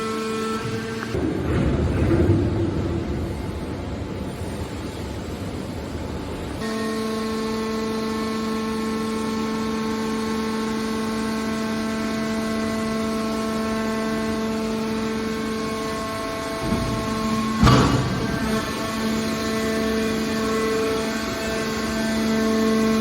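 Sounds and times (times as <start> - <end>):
steady machine whine: 2.8 - 23.0
machine low rumble: 14.5 - 22.1.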